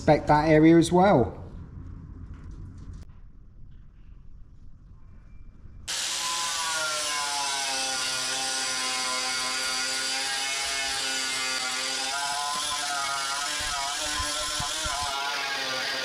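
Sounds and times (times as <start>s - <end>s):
power tool stripping paint: 5.9s - 16.0s.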